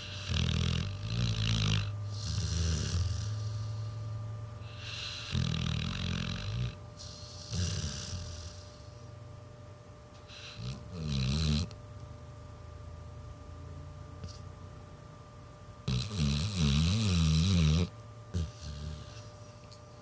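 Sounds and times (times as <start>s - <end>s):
dog snoring: 0.0s - 9.1s, 10.2s - 11.8s, 14.2s - 14.5s, 15.8s - 19.8s.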